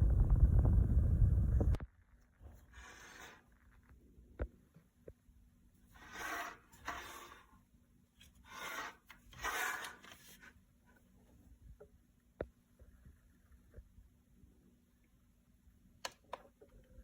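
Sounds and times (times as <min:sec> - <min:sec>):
short scraping noises: 0:02.4 - 0:03.7, 0:05.9 - 0:07.6.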